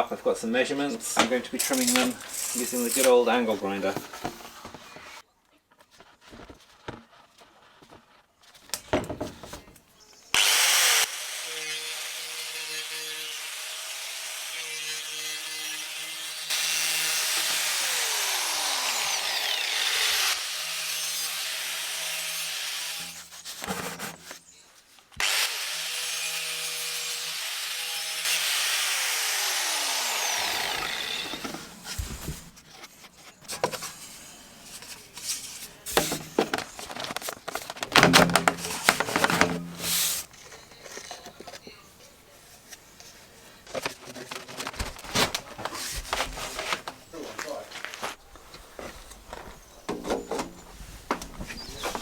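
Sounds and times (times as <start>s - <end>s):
angle grinder cutting pipe: 1.0s - 3.5s, 10.4s - 23.5s, 25.2s - 32.0s, 37.9s - 41.3s
knocks and clatter: 36.0s - 40.0s.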